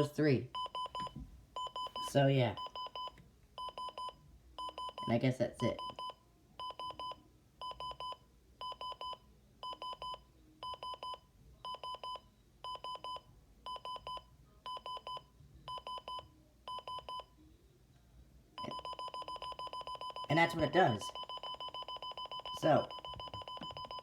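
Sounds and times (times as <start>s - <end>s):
alarm clock beeping: 18.6s - 24.0s.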